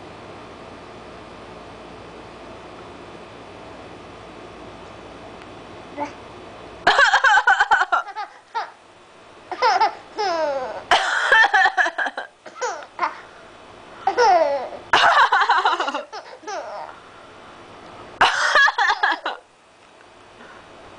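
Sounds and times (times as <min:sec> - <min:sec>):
baby laughing: 0:06.9 - 0:08.8, 0:09.5 - 0:13.2, 0:14.0 - 0:16.9
sharp coughs: 0:10.9 - 0:11.4, 0:18.2 - 0:19.0.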